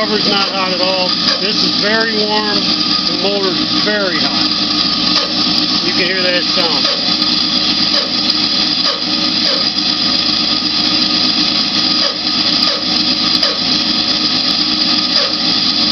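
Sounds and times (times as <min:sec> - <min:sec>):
bandsaw humming: 0:00.0 - 0:15.9.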